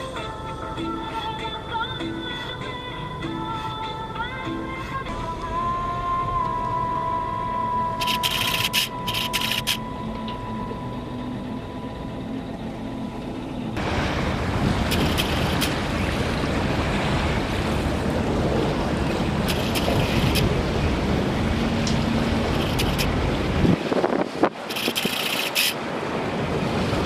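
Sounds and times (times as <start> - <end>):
ferry engine running: 0.0 - 27.0
rushing wind: 13.2 - 27.0
water rushing: 13.8 - 27.0.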